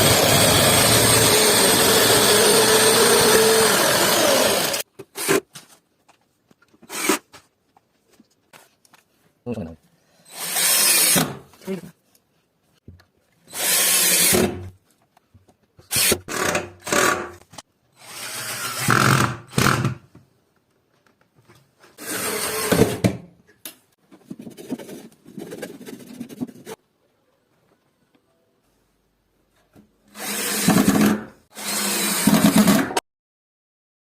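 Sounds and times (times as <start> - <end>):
power drill bursts: 0.0 - 4.8, 30.2 - 32.9.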